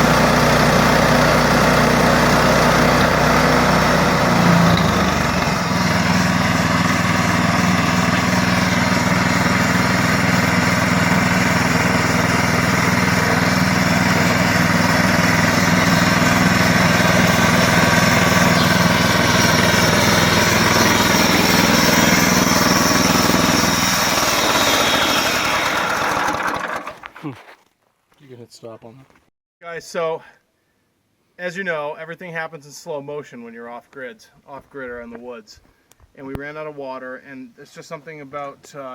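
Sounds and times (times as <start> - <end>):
sawmill gasoline engine running: 0.0 - 27.5.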